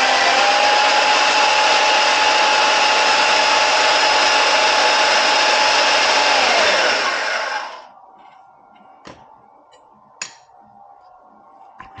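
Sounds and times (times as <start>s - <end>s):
band saw running and winding down: 0.0s - 7.9s.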